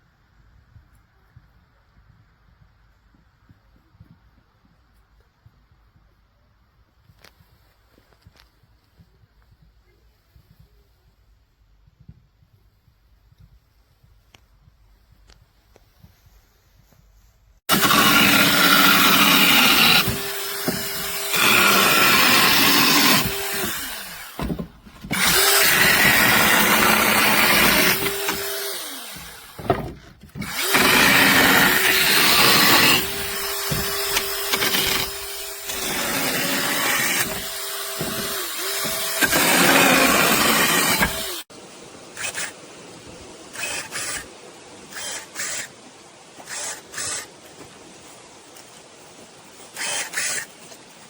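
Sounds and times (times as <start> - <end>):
mini chainsaw whining and cutting: 17.7 - 41.5, 46.5 - 47.3.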